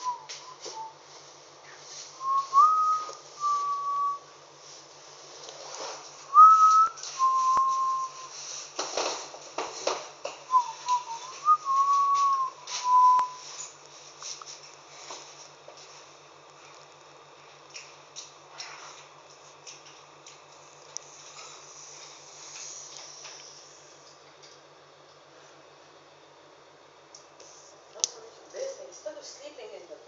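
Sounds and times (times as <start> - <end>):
person whistling: 0.0 - 1.0, 2.2 - 4.2, 6.3 - 8.3, 10.5 - 13.5
rustling noise: 0.0 - 17.7.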